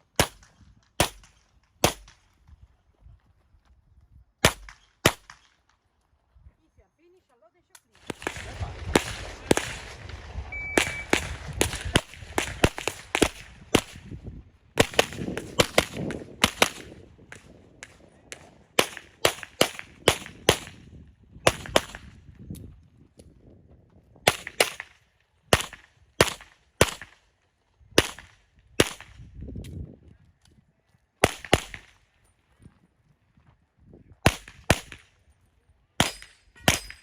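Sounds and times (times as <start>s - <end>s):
handgun shots: 10.7s - 14.1s, 36.0s - 37.0s.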